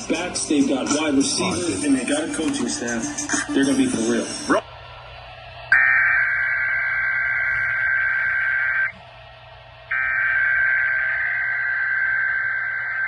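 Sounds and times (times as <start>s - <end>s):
digital data tones blaring: 5.8s - 8.9s, 9.9s - 13.0s.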